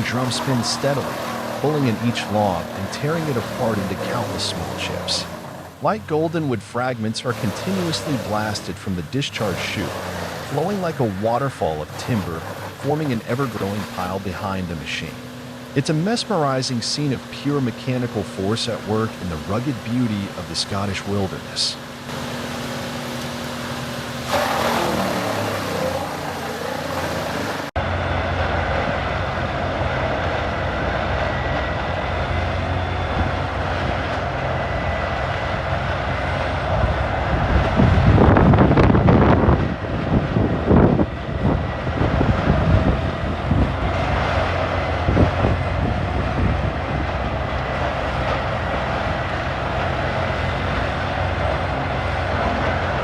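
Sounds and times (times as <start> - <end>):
rough grinding surges: 0.0 - 27.7
wood chipper running: 0.0 - 53.0.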